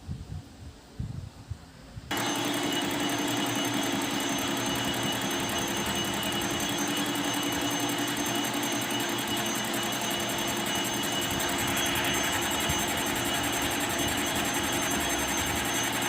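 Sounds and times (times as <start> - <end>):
machine motor humming and whining: 2.1 - 16.0.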